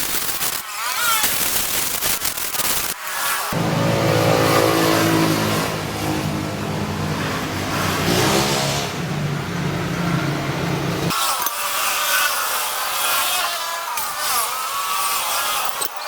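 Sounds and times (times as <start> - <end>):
scooter engine running: 3.5 - 11.1.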